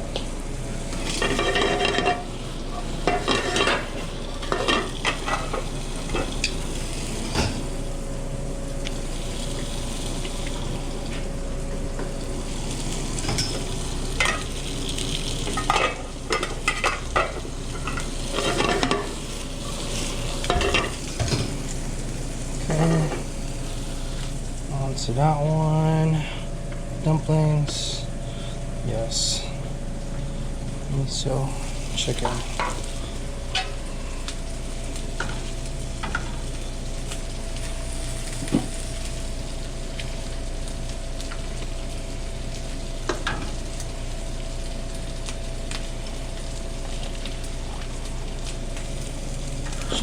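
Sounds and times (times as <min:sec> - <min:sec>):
food sizzling in a pan: 0:00.0 - 0:26.0, 0:29.8 - 0:50.0
kitchen hum: 0:00.0 - 0:50.0
metal utensils and pans clattering: 0:01.0 - 0:02.3, 0:03.0 - 0:06.6, 0:13.2 - 0:14.5, 0:15.5 - 0:19.2, 0:20.0 - 0:21.6.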